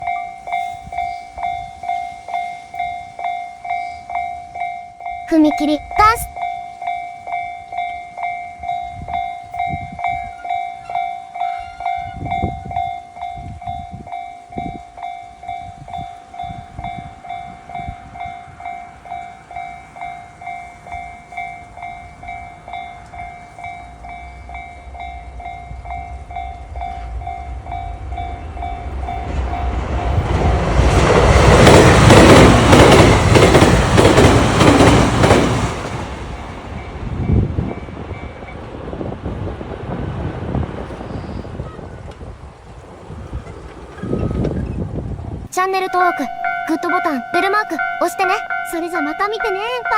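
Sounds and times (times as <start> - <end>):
level crossing warning bell: 0.0 - 29.9, 45.5 - 49.9
train wheels clacking over rail joints: 30.2 - 36.2.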